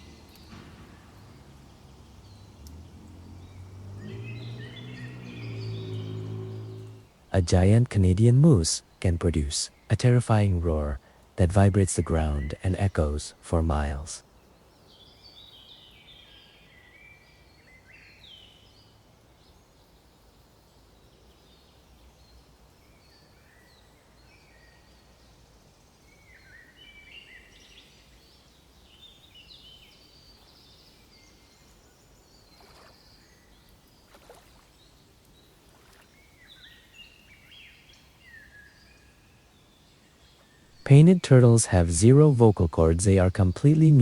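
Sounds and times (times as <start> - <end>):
low outdoor background hiss: 0.0 - 44.0
small birds chirping: 0.0 - 44.0
faint clicks: 0.3 - 2.9.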